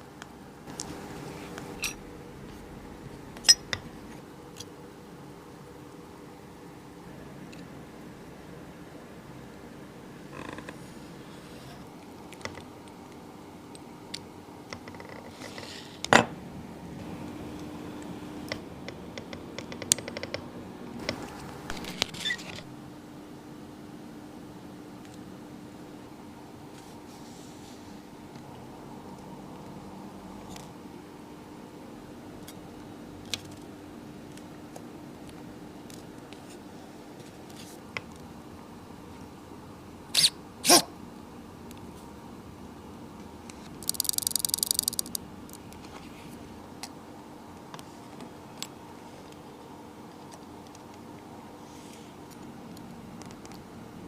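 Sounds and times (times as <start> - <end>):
steady low hum: 0.0 - 54.0
small tool clicks and scrapes: 43.8 - 45.2.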